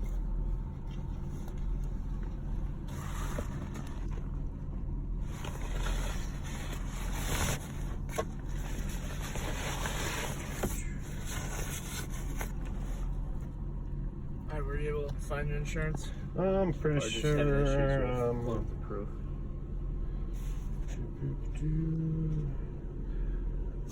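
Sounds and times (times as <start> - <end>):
car engine idling: 0.0 - 23.9
rustling: 5.2 - 13.1.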